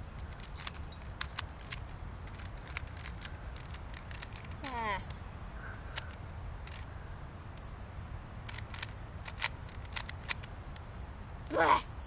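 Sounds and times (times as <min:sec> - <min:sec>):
low steady rumble: 0:00.0 - 0:12.0
plastic puzzle cube clicking: 0:00.4 - 0:05.2, 0:06.0 - 0:06.9, 0:08.5 - 0:10.5.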